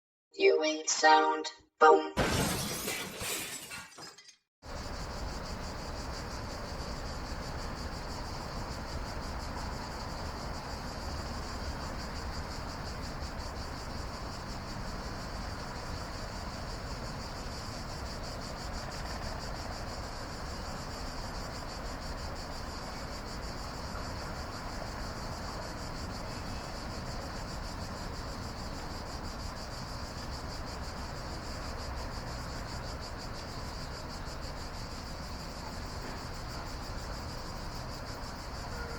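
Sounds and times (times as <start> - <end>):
cicadas buzzing: 4.6 - 38.9.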